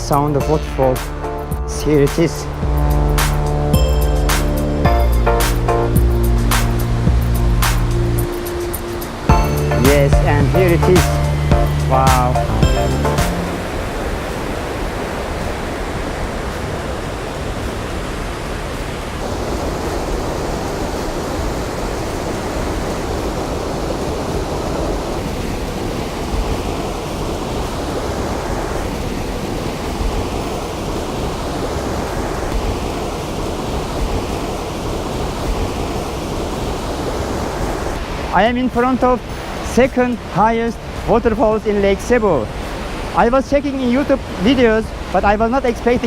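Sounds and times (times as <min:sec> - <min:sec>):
waterfall crashing into pool: 0:13.2 - 0:46.0.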